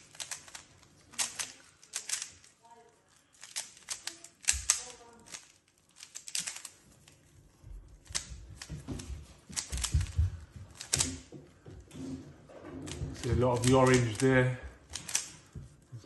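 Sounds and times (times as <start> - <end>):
plastic puzzle cube clicking: 0.0 - 2.6, 3.3 - 7.1, 8.0 - 8.8, 9.5 - 11.3, 13.2 - 15.6.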